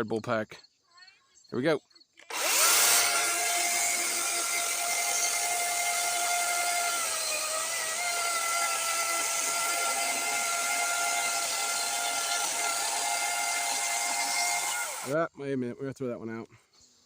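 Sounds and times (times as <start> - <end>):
electric chainsaw cutting log: 2.3 - 15.2.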